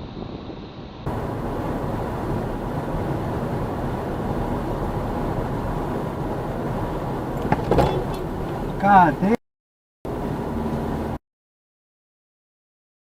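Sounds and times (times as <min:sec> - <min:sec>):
car road and engine noise: 0:00.0 - 0:09.4, 0:10.1 - 0:11.2
sharp knocks: 0:07.4 - 0:08.3.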